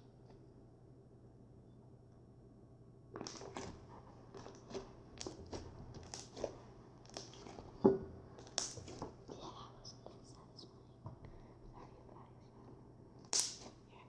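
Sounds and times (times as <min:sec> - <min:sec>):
slime squishing and crackling: 0:03.2 - 0:09.4, 0:13.2 - 0:13.8.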